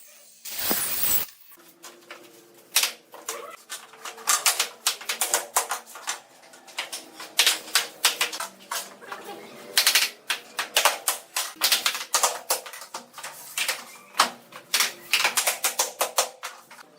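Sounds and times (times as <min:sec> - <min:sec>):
hard objects tapping and clacking: 0:09.8 - 0:16.9.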